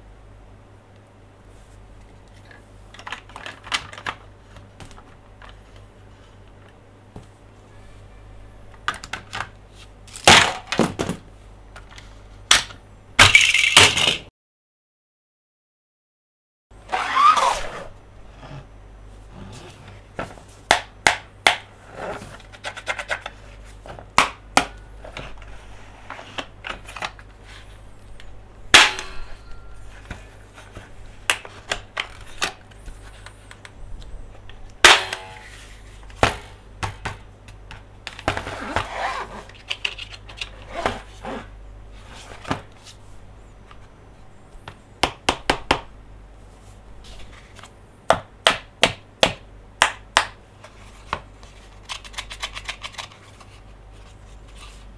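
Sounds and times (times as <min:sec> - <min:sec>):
plastic toys clicking and tapping: 0:02.4 - 0:05.6, 0:11.8 - 0:14.2, 0:51.8 - 0:53.3.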